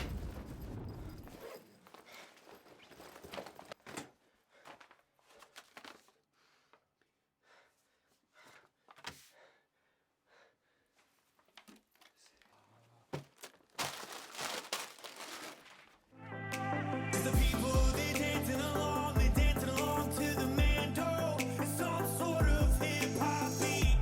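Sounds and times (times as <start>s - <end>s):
rustling: 0.0s - 6.8s, 11.0s - 16.1s.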